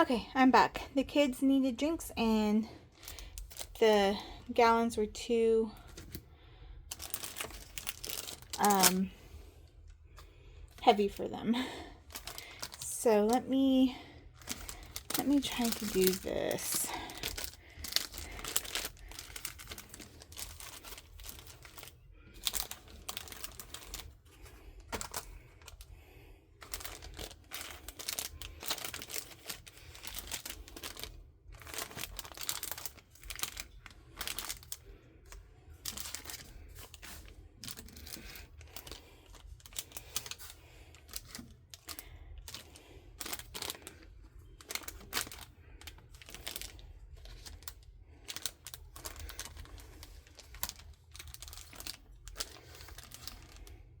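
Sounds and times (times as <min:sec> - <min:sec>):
packaging rustling: 0:02.9 - 0:04.2, 0:05.8 - 0:54.0.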